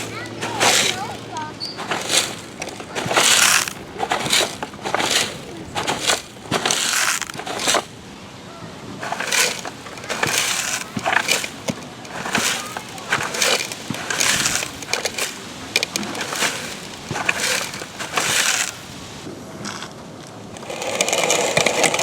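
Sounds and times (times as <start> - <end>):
toy truck scraping sand: 0.0 - 8.1, 8.9 - 22.0.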